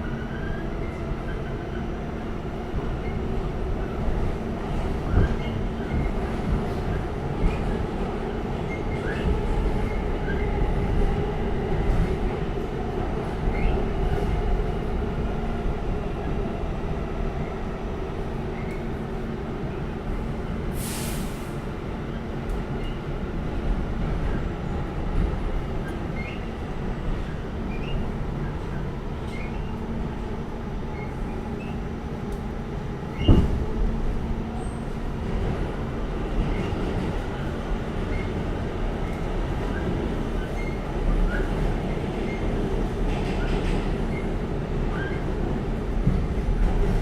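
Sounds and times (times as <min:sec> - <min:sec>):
subway train rumble: 0:00.0 - 0:47.0
short hiss: 0:20.8 - 0:21.5.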